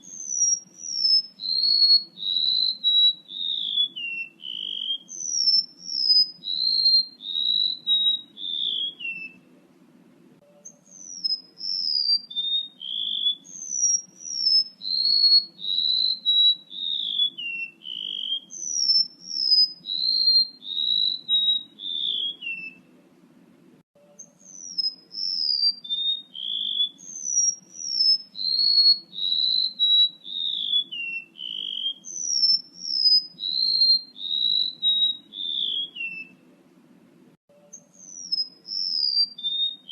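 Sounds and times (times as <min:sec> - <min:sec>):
high thin whistled bird song: 0:00.0 - 0:09.6, 0:10.4 - 0:23.0, 0:24.0 - 0:36.5, 0:37.5 - 0:39.9
faint low hum: 0:03.2 - 0:11.9, 0:20.6 - 0:25.4.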